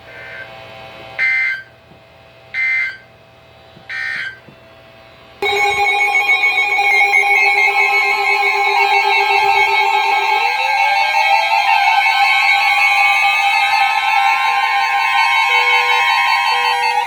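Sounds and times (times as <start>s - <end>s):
loud steady attention tone: 5.4s - 17.0s
two-tone data bursts: 5.4s - 17.0s.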